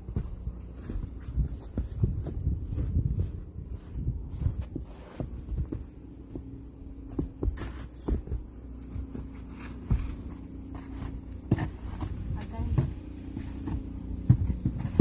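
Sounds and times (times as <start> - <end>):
low steady hum: 0.0 - 15.0
snow shovel thumping and crunching: 7.4 - 15.0.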